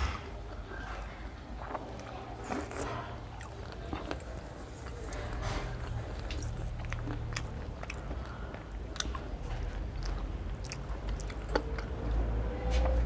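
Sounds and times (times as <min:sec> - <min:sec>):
person chewing: 0:01.6 - 0:12.2
mouth clicks and smacks: 0:01.7 - 0:12.1.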